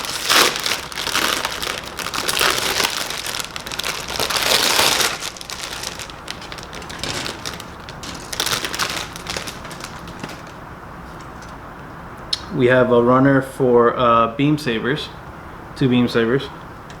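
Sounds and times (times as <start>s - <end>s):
plastic bag crinkling: 0.0s - 10.6s.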